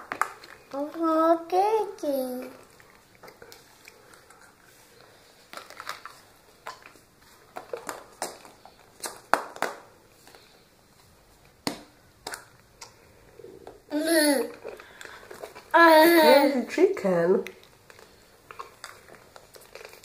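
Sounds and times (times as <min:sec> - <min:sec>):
clicks and crackles of wrappers: 0:00.0 - 0:01.2, 0:02.1 - 0:10.7, 0:11.4 - 0:13.8, 0:14.4 - 0:16.0, 0:17.2 - 0:20.0
snaps and rustles: 0:05.4 - 0:10.6.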